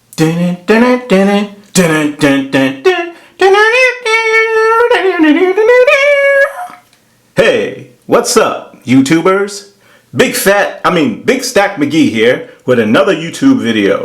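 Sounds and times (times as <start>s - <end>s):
person singing wordless tune: 0.0s - 6.9s.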